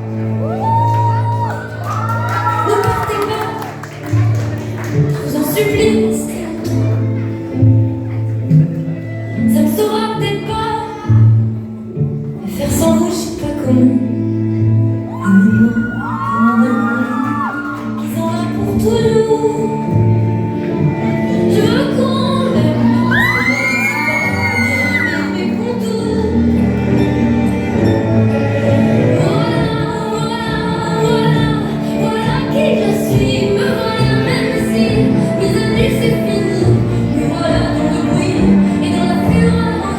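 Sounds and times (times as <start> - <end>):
music with singing: 0.0 - 39.9.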